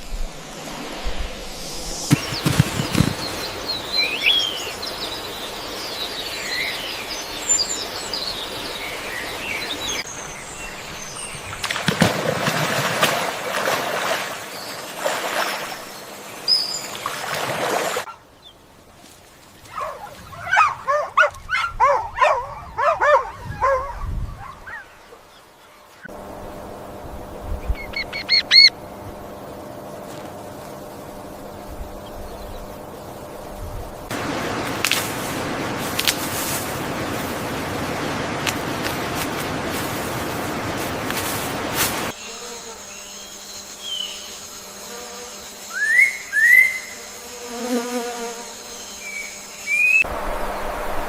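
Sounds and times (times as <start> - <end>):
birds chirping and calling: 2.1 - 11.8, 27.6 - 28.7.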